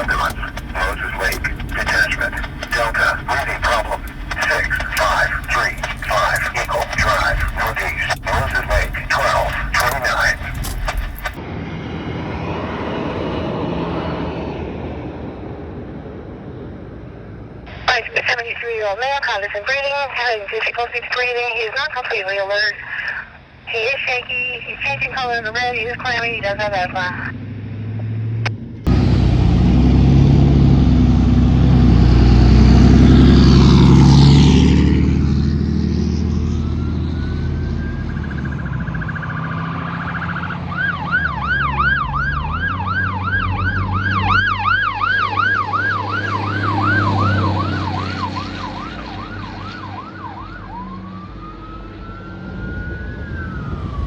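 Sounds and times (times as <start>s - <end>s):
fire engine running loudly: 0.0s - 11.4s, 28.9s - 54.0s
siren wailing and yelping: 36.6s - 54.0s.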